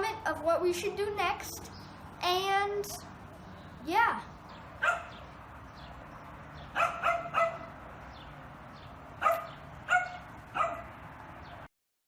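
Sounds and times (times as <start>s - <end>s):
dog barking: 4.8s - 5.2s, 6.7s - 7.8s, 9.2s - 11.0s.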